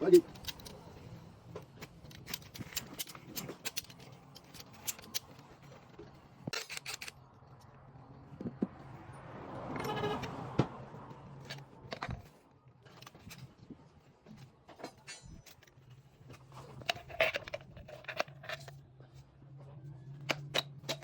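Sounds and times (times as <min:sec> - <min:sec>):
hand tools clicking and rattling: 0:00.2 - 0:00.9, 0:01.8 - 0:05.8.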